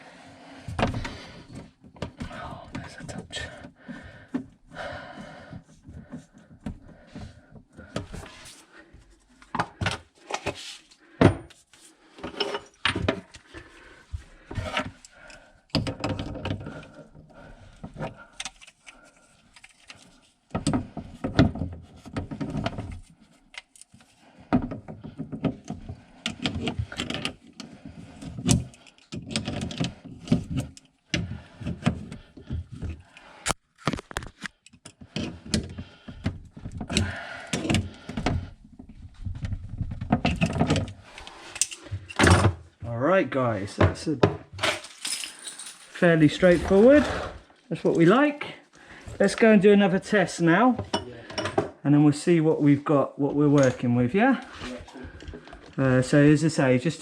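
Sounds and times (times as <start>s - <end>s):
hand tools clinking on metal pipes: 44.7s - 46.0s.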